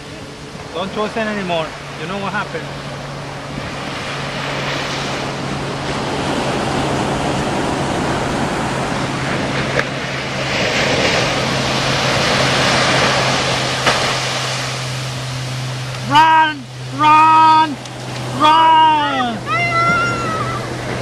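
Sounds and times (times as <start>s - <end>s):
ocean surf breaking: 0.0s - 21.0s.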